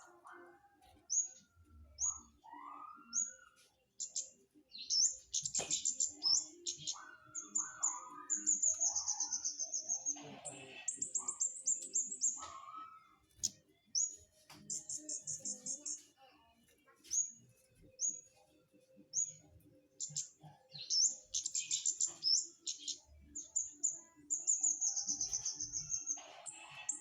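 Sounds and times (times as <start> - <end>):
bird twittering trills: 2.0 - 16.0.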